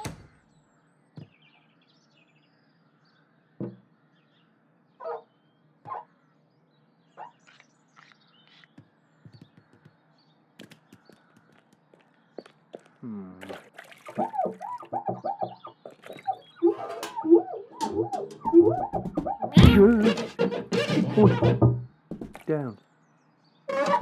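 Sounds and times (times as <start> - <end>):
faint birdsong: 0.0 - 19.6, 20.3 - 24.0
soft cartoon thuds: 3.6 - 3.8, 14.2 - 22.5.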